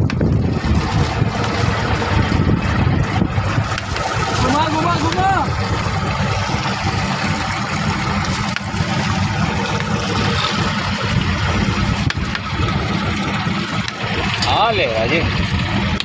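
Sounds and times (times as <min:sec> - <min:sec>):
boat engine running: 0:00.0 - 0:16.0
wind buffeting microphone: 0:00.0 - 0:16.0.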